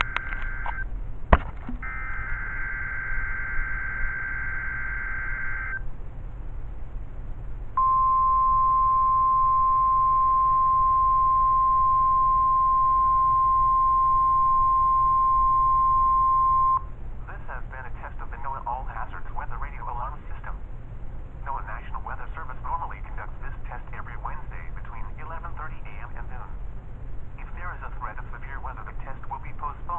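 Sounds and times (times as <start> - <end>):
buzzy two-tone data burst: 0.0 - 0.8, 1.8 - 5.8
steady warning alarm tone: 0.0 - 0.8, 1.8 - 5.8, 7.8 - 16.9.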